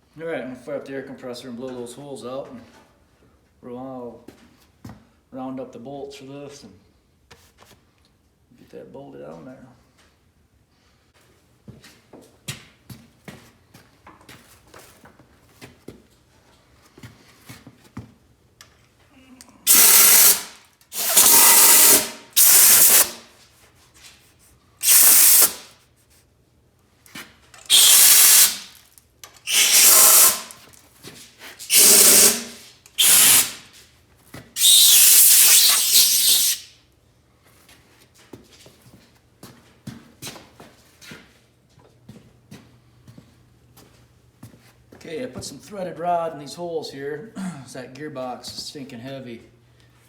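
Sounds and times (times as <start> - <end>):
compressed air blow gun hisses: 19.7 - 23.2, 24.8 - 25.7, 27.7 - 28.8, 29.4 - 30.6, 31.6 - 33.6, 34.6 - 36.7.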